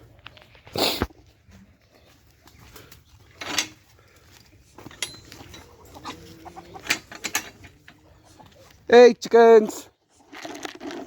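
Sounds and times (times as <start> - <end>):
chickens clucking: 0.1 - 8.9.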